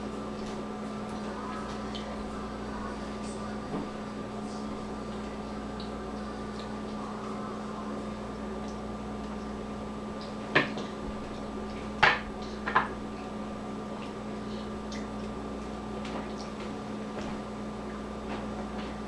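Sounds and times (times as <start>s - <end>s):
low hum: 0.0s - 19.0s
dishes knocking: 12.0s - 13.0s.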